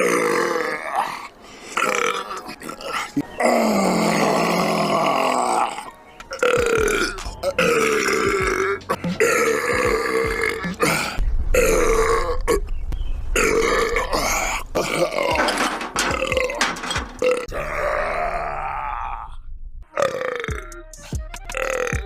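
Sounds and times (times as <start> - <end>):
man burping loudly: 0.0 - 12.6, 13.4 - 19.4, 20.0 - 20.7, 21.5 - 22.0.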